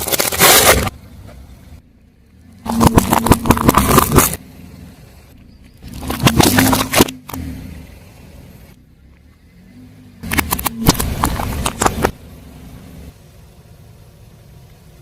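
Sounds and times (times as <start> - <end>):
tyre crushing crunchy objects: 0.0 - 1.4, 2.6 - 4.4, 5.7 - 7.5, 10.3 - 12.2
low rumble of car: 0.0 - 15.0.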